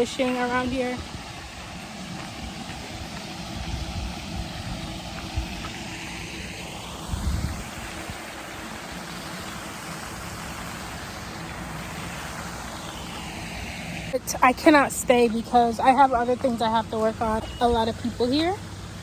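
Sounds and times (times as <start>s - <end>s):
wind rumbling on microphone: 0.0s - 14.2s
outdoor background noise: 0.0s - 19.0s.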